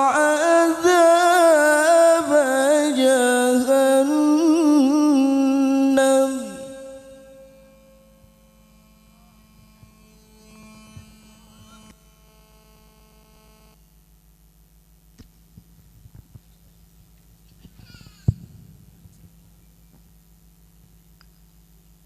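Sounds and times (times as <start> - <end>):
person reciting sung note: 0.0 - 8.0
electrical mains hum: 0.0 - 22.0.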